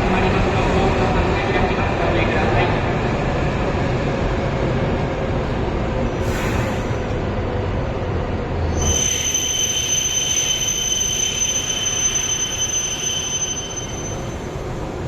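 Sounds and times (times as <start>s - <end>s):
train running noise: 0.0s - 15.0s
high-pitched two-tone squeal: 8.7s - 14.7s.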